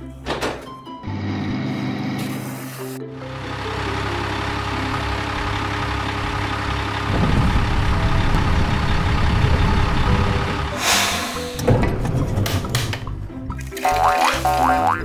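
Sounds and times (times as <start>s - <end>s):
heavy vehicle engine running: 1.0s - 12.0s.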